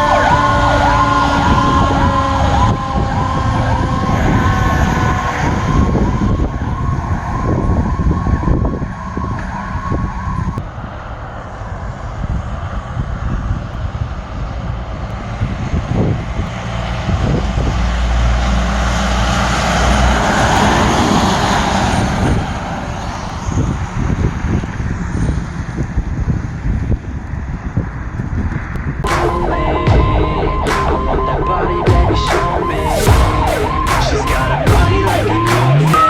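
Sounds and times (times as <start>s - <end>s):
fire engine siren: 0.0s - 10.6s, 17.2s - 23.0s, 29.1s - 36.0s
rushing noise: 0.0s - 13.3s, 29.0s - 36.0s
vehicle engines rumbling: 0.0s - 36.0s.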